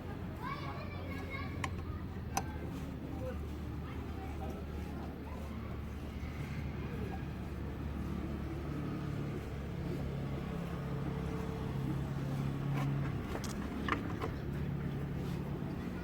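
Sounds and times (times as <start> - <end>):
vehicle engine humming: 3.8 - 16.0.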